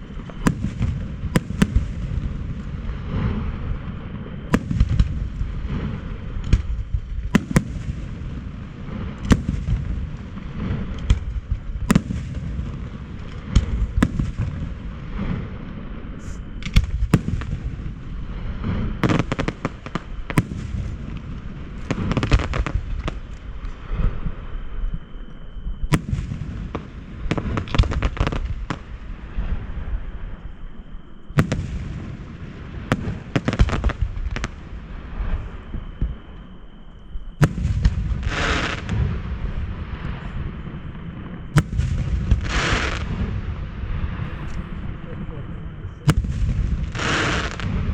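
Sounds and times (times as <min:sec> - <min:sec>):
fireworks bursting with sharp bangs: 0:00.0 - 0:25.2, 0:25.8 - 0:30.4, 0:31.3 - 0:36.5, 0:37.4 - 0:47.9
continuous low rumble: 0:00.0 - 0:47.9.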